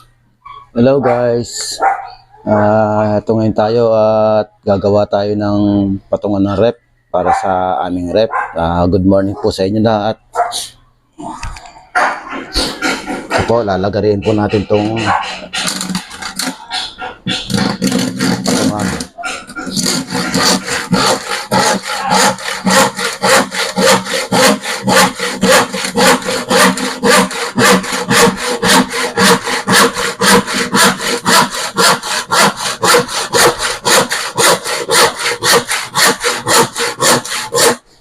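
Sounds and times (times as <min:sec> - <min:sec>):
hand saw cutting plywood: 0:12.3 - 0:37.9.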